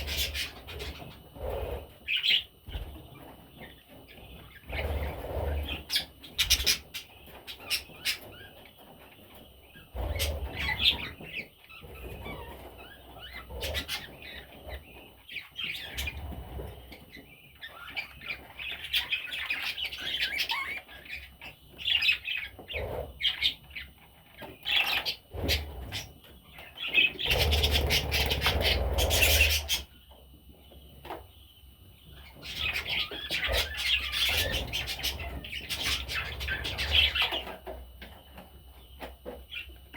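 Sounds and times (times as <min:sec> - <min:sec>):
budgerigars chirping and warbling: 0:00.0 - 0:39.9.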